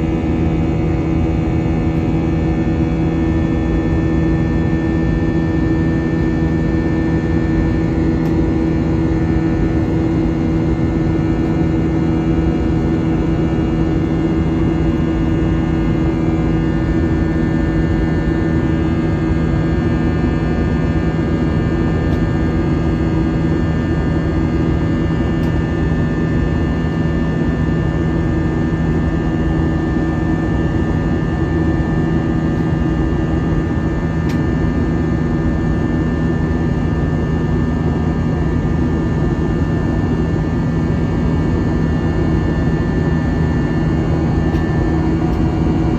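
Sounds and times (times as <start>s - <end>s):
airflow rushing in aircraft cabin: 27.9s - 45.9s
jet engines humming: 40.8s - 45.9s.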